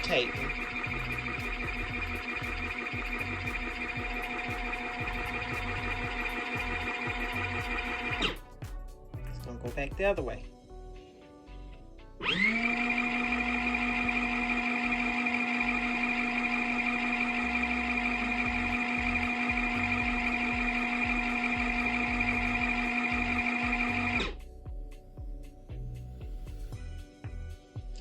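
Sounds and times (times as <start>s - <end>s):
washing machine motor whining: 0.0s - 8.4s, 12.2s - 24.4s.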